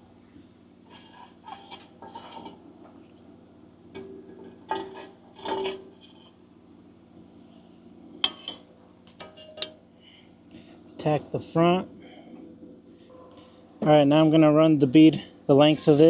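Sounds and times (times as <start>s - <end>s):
steel clanking and scraping on metal: 0.8s - 3.0s, 3.9s - 6.4s, 8.2s - 9.8s, 13.4s - 16.0s.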